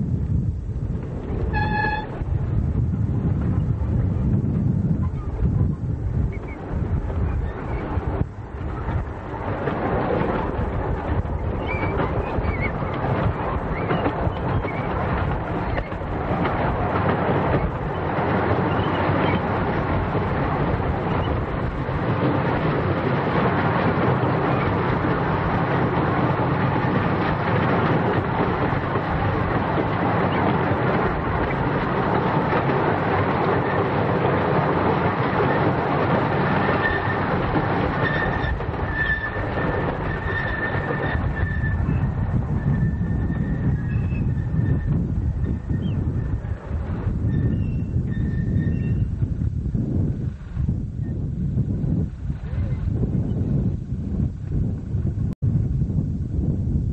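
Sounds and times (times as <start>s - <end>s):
high wheel squeal: 1.5s - 2.1s, 11.6s - 15.0s, 17.6s - 19.5s, 36.6s - 46.5s, 47.2s - 49.2s
miniature train running on track: 7.8s - 47.2s.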